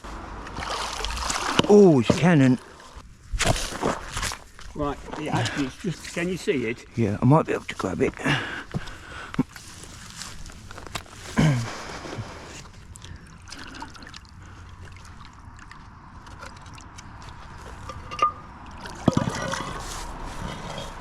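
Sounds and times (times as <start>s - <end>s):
water trickling and sloshing: 0.1s - 6.3s, 12.4s - 21.0s.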